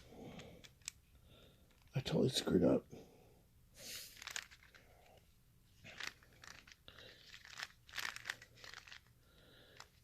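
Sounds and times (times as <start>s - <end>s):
puzzle cube clicking: 0.3s - 1.0s, 4.1s - 4.9s, 6.0s - 9.1s.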